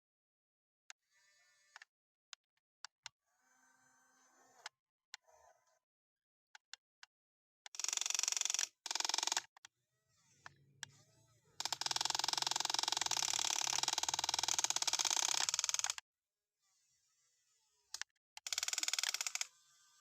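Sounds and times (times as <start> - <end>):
toy excavator motors buzzing: 7.8 - 16.0, 16.6 - 20.0.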